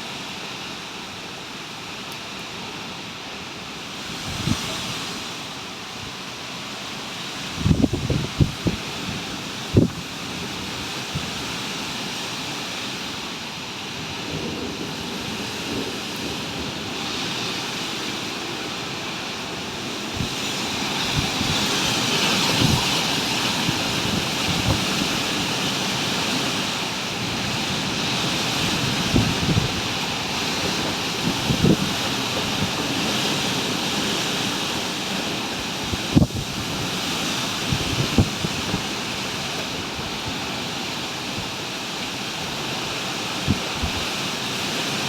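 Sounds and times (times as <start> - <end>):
gusty wind rushing: 3.9 - 6.3, 7.2 - 12.1, 13.8 - 34.8, 35.6 - 40.6
wind buffeting microphone: 4.0 - 5.3, 7.4 - 11.6, 18.7 - 34.8, 35.6 - 40.6, 43.4 - 44.2.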